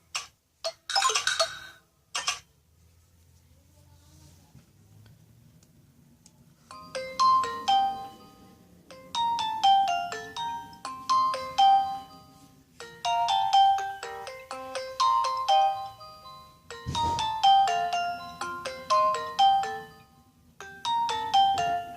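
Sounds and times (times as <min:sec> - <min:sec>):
mobile phone ringtone melody: 0:06.7 - 0:21.9.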